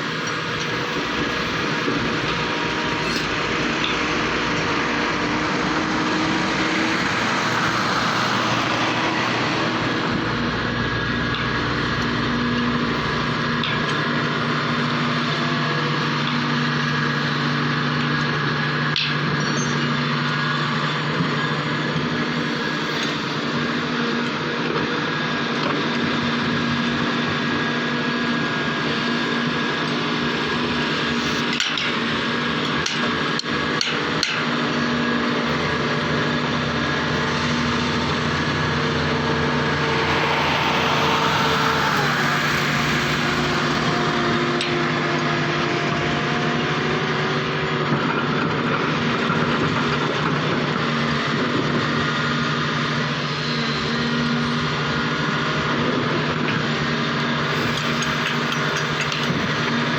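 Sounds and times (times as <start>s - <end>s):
excavator diesel engine: 0.0s - 59.9s.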